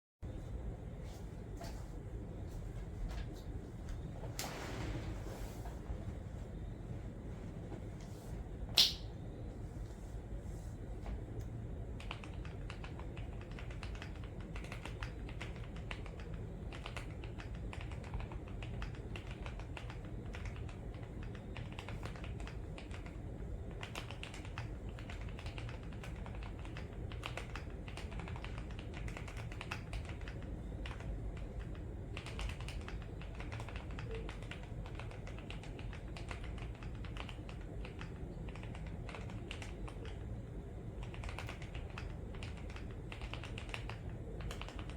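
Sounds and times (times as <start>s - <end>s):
low background hum: 0.2s - 44.9s
typing on mechanical keyboard: 12.0s - 44.9s.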